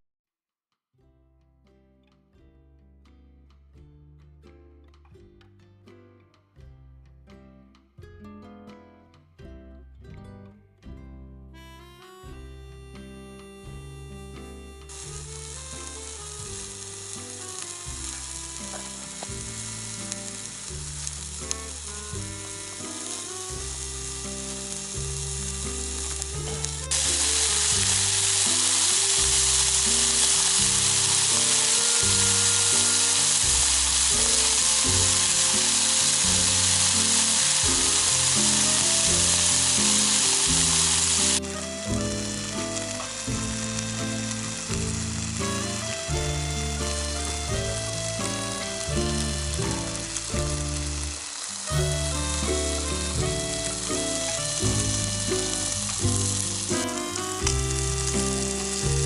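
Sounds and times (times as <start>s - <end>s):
background music with beat: 10.9s - 59.0s.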